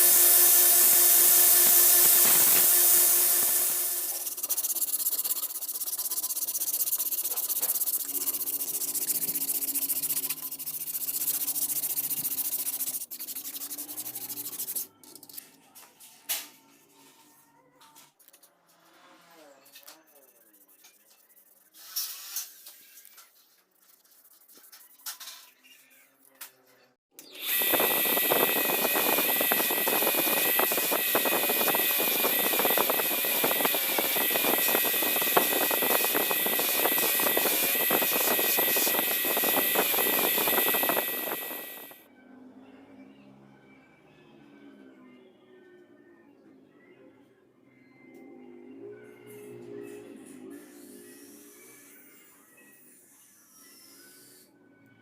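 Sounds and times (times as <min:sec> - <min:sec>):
electric grinder whining: 0:00.0 - 0:04.4, 0:27.2 - 0:42.0
sanding metal blade: 0:00.0 - 0:15.4, 0:27.4 - 0:42.0
grinder crackle on steel: 0:00.6 - 0:04.3, 0:27.4 - 0:42.0.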